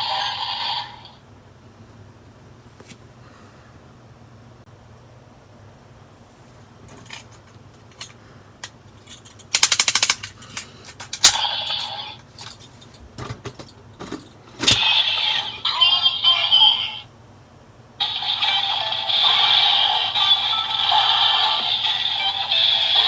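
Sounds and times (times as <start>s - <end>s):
ratchet-like rattle: 9.0s - 13.0s
plastic toy clicks: 9.4s - 11.4s
toy electronic sound effects: 11.2s - 12.2s, 18.0s - 23.0s.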